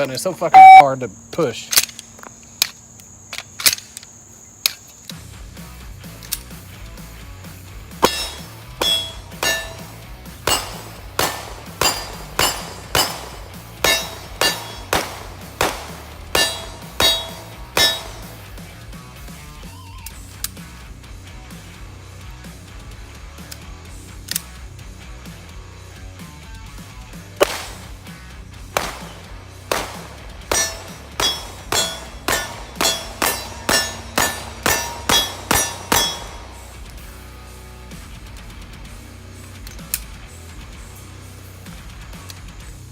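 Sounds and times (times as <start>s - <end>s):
short metallic ring: 0.6s - 0.8s, 8.0s - 15.0s, 16.3s - 18.4s, 30.5s - 36.8s
pistol shots: 8.0s - 18.6s, 27.4s - 36.9s.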